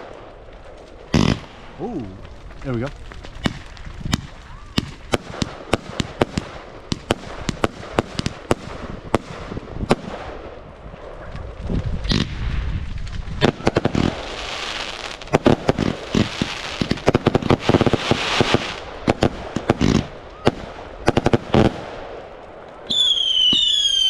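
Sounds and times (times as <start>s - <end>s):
firework bangs and crackles: 0.0s - 24.0s
whistling firework falling in pitch: 22.9s - 24.0s.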